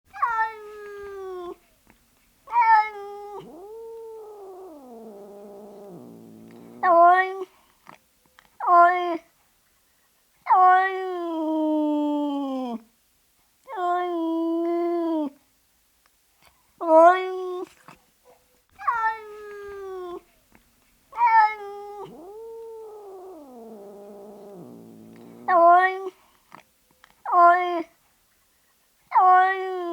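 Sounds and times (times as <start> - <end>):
cat meowing: 2.5 - 7.4, 21.2 - 26.1.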